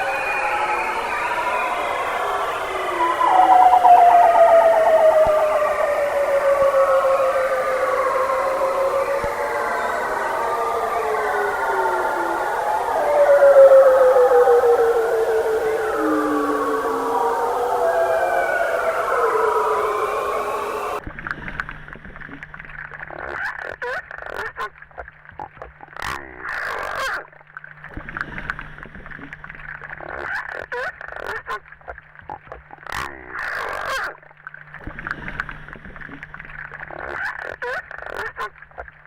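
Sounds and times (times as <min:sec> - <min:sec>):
seals calling: 0:00.0 - 0:21.0, 0:32.9 - 0:34.2
low hum: 0:00.0 - 0:23.2.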